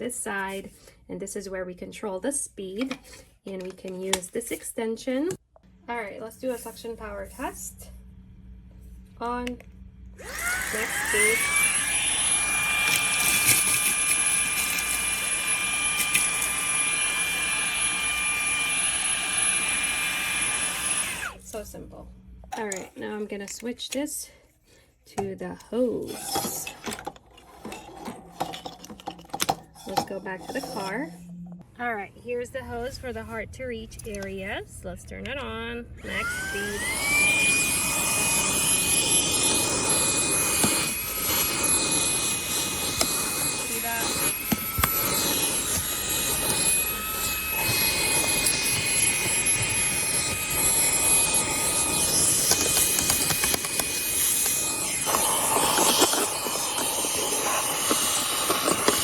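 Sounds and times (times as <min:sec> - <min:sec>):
vacuum motor whine over rushing air: 0:05.7 - 0:22.5, 0:36.0 - 0:59.0.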